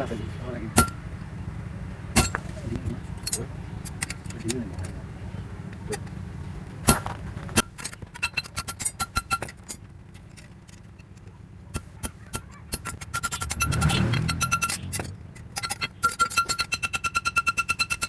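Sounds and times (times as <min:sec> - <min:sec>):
hammer ringing on anvil: 0:00.8 - 0:01.1.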